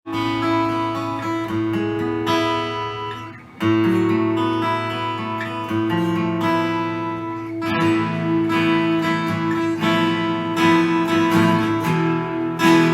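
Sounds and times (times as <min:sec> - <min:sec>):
acoustic guitar strummed and picked: 0:00.1 - 0:12.9.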